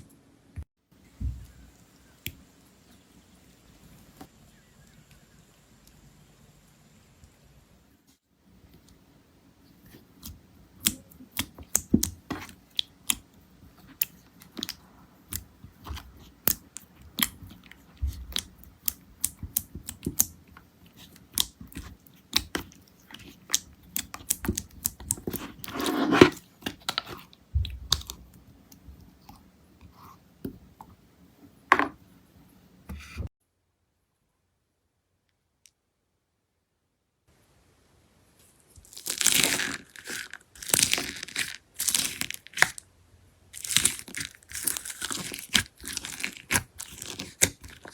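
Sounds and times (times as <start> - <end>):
slime squishing: 9.7 - 30.9, 38.8 - 42.8, 43.6 - 47.9.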